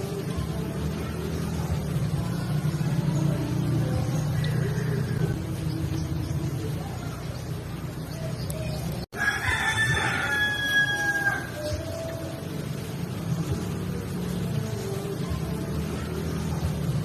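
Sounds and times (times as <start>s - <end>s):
rooster crowing: 9.2s - 11.8s.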